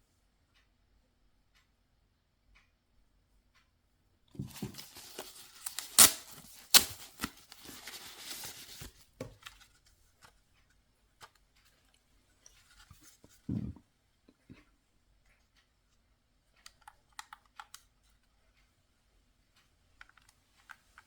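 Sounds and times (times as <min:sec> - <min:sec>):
packaging tearing and crinkling: 0:04.4 - 0:08.9.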